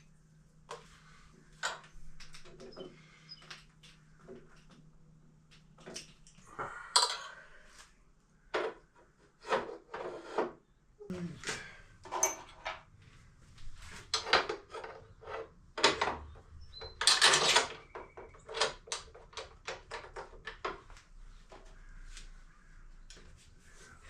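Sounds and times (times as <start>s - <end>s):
tools clicking and knocking: 12.1s - 12.8s, 14.1s - 21.0s.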